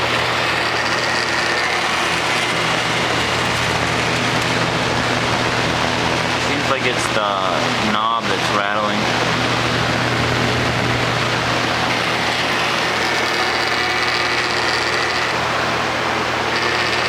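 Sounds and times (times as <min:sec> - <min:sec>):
fan knob rattling: 0:00.0 - 0:04.6
box fan running: 0:00.0 - 0:17.0.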